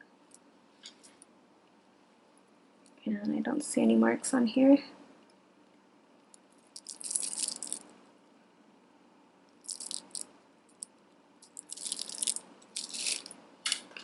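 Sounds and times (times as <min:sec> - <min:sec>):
jewelry and plastic beads rattling: 0:06.5 - 0:07.9, 0:09.6 - 0:13.4.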